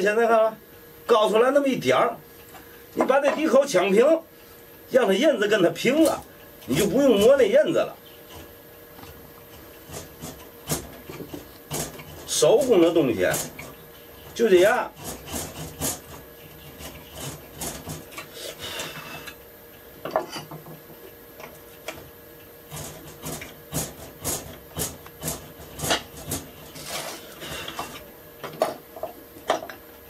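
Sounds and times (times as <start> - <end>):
chisel scraping wood: 13.3 - 18.0.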